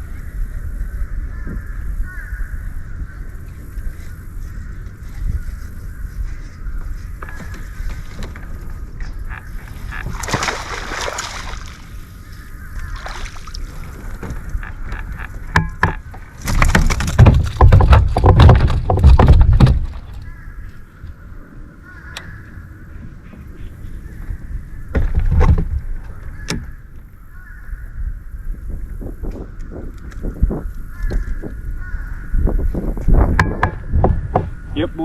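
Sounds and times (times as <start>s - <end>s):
water sloshing and splashing: 7.3s - 20.2s
knocks on kayak: 15.5s - 20.2s, 33.2s - 34.6s.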